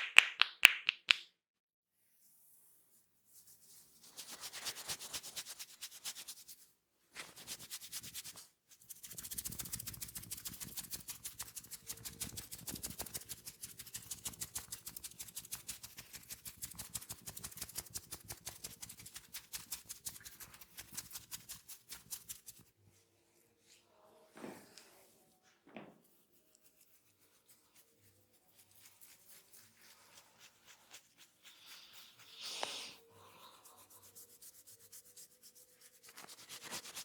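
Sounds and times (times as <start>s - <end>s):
hands tapping and rustling hair: 0.0s - 1.2s.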